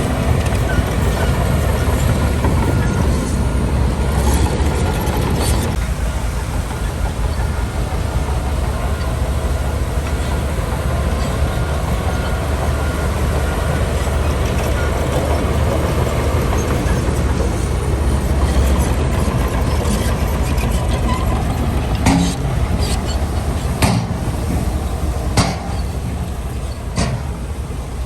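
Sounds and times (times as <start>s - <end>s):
diesel machinery engine rumble: 0.0s - 28.0s.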